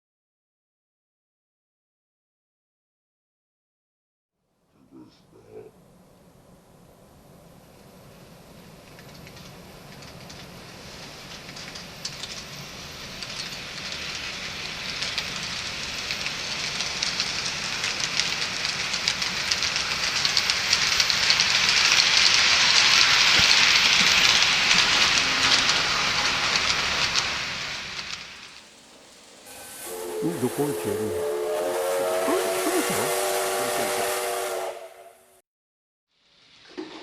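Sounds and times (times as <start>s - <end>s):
hiss: 4.9s - 35.4s, 36.1s - 37.0s
train rumbling: 5.7s - 35.3s.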